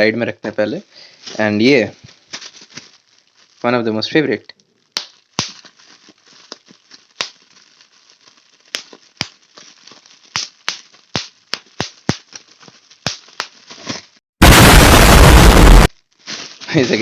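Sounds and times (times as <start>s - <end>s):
packaging crinkling: 2.0s - 3.6s, 4.8s - 14.2s
packaging snapping and popping: 4.9s - 14.0s.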